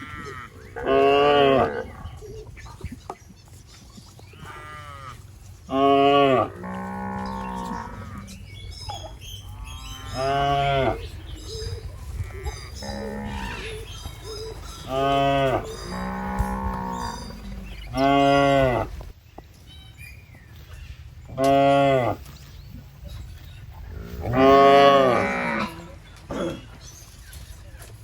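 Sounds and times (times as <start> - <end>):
cow mooing loudly: 0.0 - 1.9, 5.7 - 8.3, 14.9 - 19.0, 24.2 - 25.8
quieter cattle mooing: 0.0 - 2.2, 4.4 - 8.6, 12.2 - 19.1, 23.9 - 26.6.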